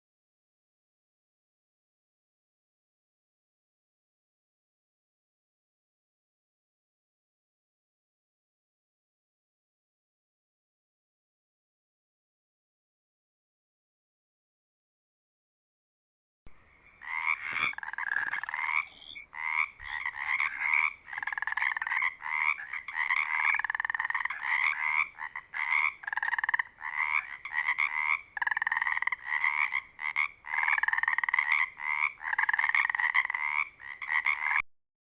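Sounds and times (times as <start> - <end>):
frogs croaking: 16.5 - 34.6.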